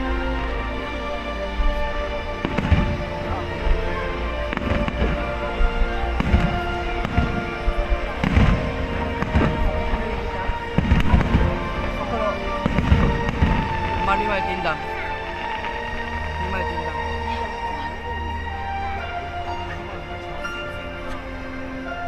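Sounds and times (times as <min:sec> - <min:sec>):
music with sustained tones: 0:00.0 - 0:22.0
fireworks booming and crackling: 0:01.6 - 0:18.3.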